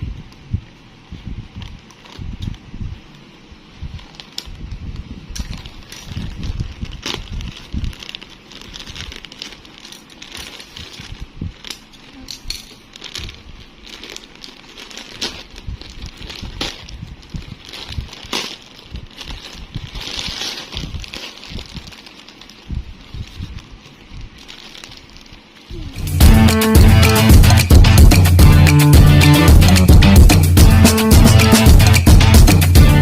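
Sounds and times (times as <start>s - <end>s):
packaging crinkling and rustling: 1.6s - 3.3s, 3.9s - 25.9s.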